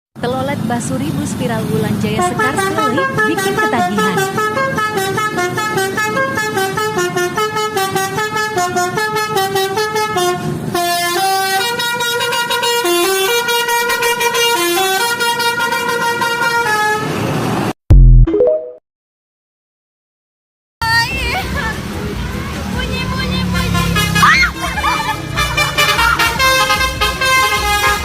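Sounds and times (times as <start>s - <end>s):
musical bus horn melody: 2.1s - 17.2s, 23.3s - 28.0s.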